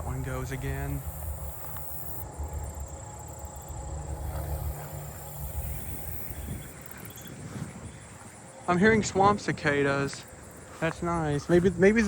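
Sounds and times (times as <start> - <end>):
low steady rumble: 0.0 - 10.7
cicada buzzing drone: 0.0 - 12.0
insects ticking: 0.0 - 12.0.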